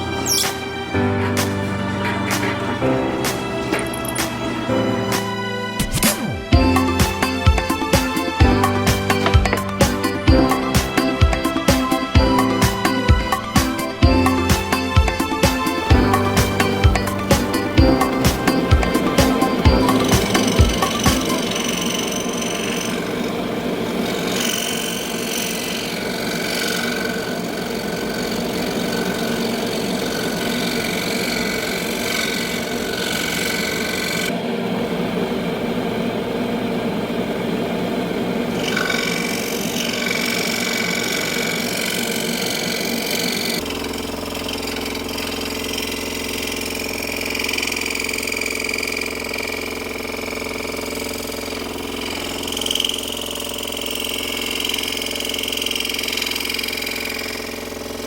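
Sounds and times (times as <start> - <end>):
scroll saw cutting wood: 0.0 - 34.4, 38.4 - 58.0
motor hum: 0.0 - 58.0.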